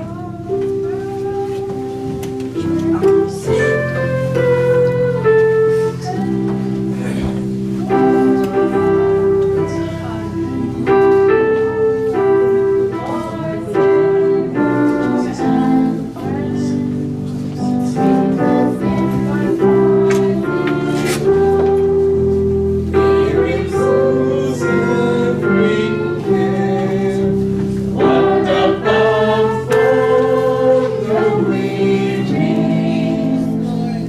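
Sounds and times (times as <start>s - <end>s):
gospel singing: 0.0s - 34.0s.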